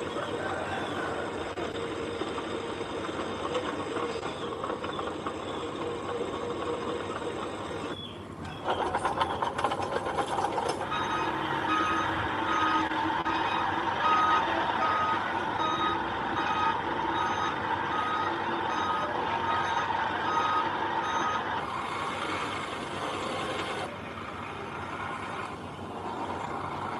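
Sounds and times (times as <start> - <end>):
diesel engine running: 0.0 - 26.9
reverse alarm beeping: 10.8 - 21.5.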